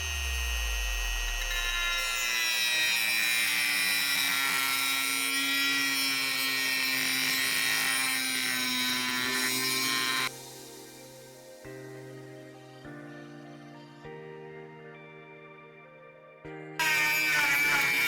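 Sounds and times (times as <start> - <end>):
rotary tool cutting metal: 0.0 - 10.4, 16.8 - 18.0.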